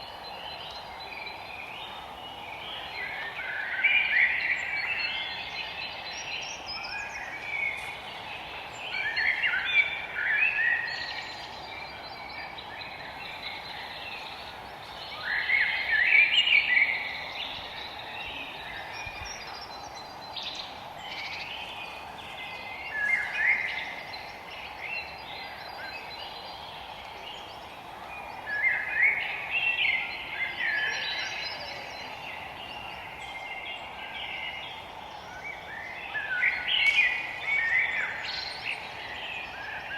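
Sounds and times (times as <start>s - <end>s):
songbirds singing: 0.0s - 39.9s
steady background hiss: 0.0s - 39.9s.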